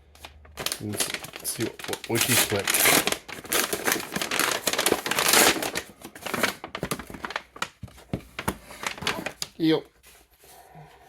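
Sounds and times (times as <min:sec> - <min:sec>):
plastic packaging crinkling: 0:00.1 - 0:09.8
plastic packaging tearing: 0:00.2 - 0:07.8, 0:08.4 - 0:09.6.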